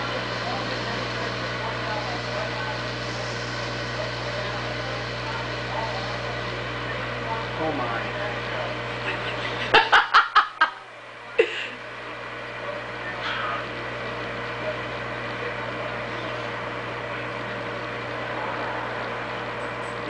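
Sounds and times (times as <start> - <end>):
microwave oven humming: 0.0 - 20.0
person laughing: 9.0 - 10.8, 11.4 - 11.8.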